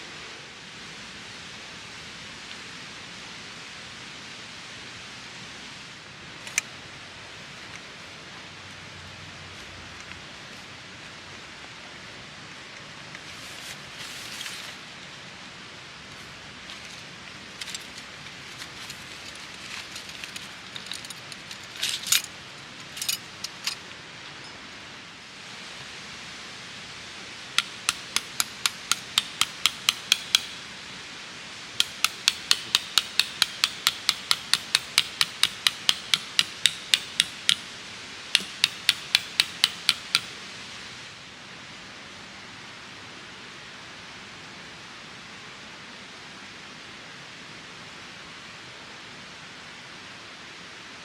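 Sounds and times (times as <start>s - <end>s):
rustling: 13.1s - 15.1s, 16.0s - 24.6s
rapid hammer strikes: 27.6s - 30.7s, 31.8s - 40.4s
scattered knocks: 38.4s - 40.3s.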